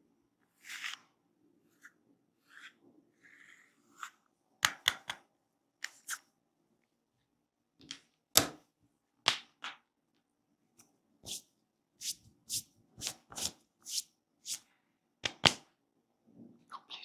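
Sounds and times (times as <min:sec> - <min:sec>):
hand slaps and snaps: 0:15.2 - 0:15.7.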